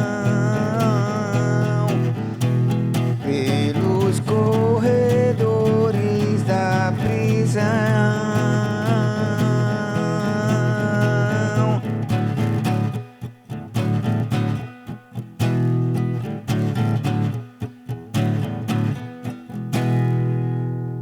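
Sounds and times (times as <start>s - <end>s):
guitar chords and plucked notes: 0.0s - 21.0s
bass guitar: 19.8s - 21.0s.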